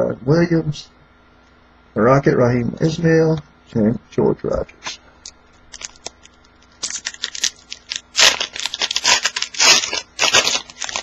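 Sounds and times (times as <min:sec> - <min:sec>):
wrapper tearing and crinkling: 0:05.7 - 0:11.0.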